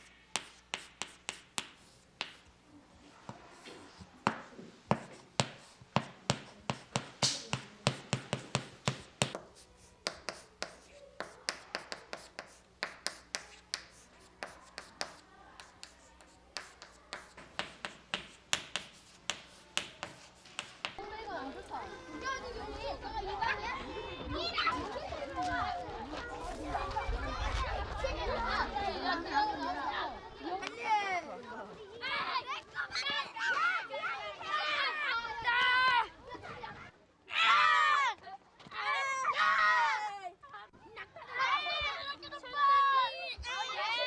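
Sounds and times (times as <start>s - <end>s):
chalk tapping and scratching on blackboard: 0.0s - 21.0s.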